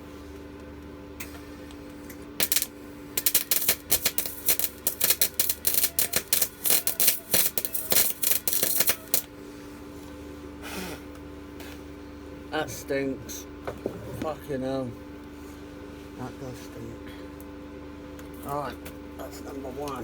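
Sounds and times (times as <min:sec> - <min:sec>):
steady hum: 0:00.0 - 0:20.0
welding arc crackling: 0:02.4 - 0:09.3.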